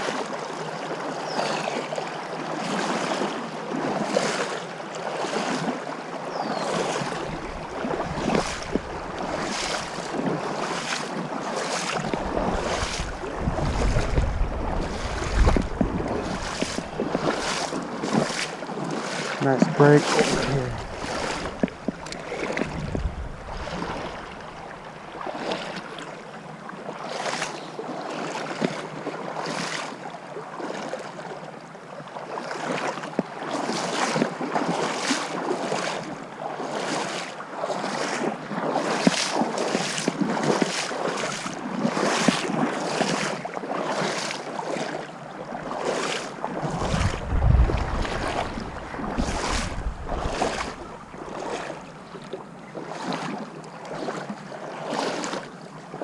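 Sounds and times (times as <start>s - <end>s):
legs wading through water: 0.0s - 56.0s
wind on microphone: 7.2s - 10.4s, 12.0s - 18.2s, 19.7s - 24.8s, 46.6s - 51.0s.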